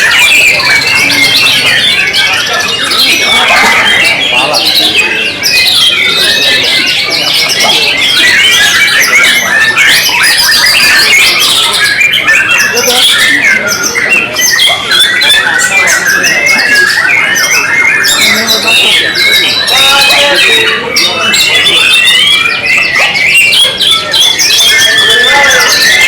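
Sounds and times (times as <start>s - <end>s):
birds singing whistled phrases: 0.0s - 26.0s
harsh bird chattering: 0.0s - 26.0s.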